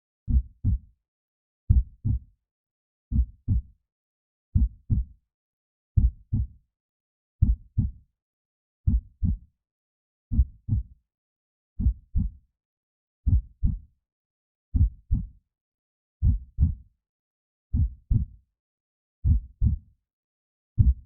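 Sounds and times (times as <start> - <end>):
heartbeat thumps: 1.7 - 2.2, 3.1 - 3.6, 6.0 - 6.5, 7.4 - 7.9, 10.3 - 10.8, 11.8 - 12.3, 13.3 - 13.8, 14.8 - 15.2, 16.2 - 16.8, 17.8 - 18.2, 19.2 - 19.8, 20.8 - 21.0.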